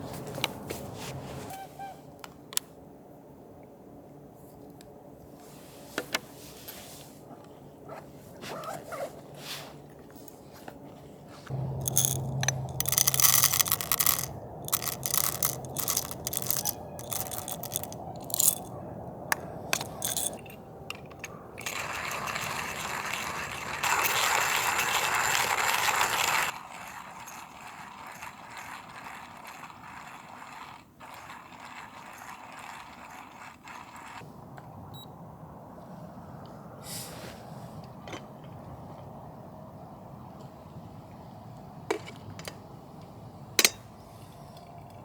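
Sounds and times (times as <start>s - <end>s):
mechanical clicking and ratcheting: 11.5s - 18.7s
low hum: 11.5s - 23.9s.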